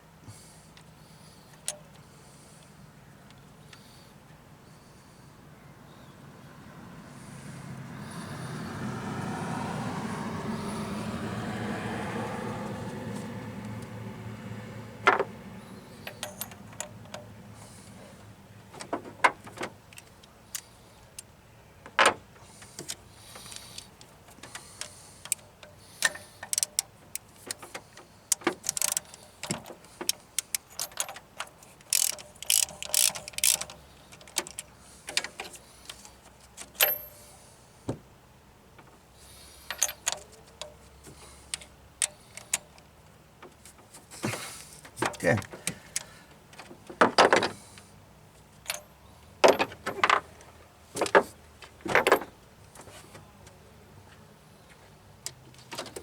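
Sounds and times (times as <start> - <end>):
tools and metal fittings clicking: 16.0 - 17.2, 22.7 - 37.2.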